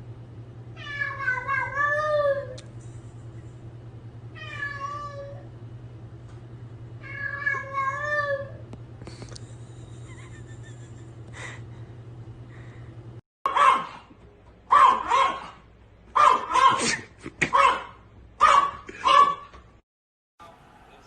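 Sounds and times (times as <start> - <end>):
steady low hum: 0.0 - 13.2.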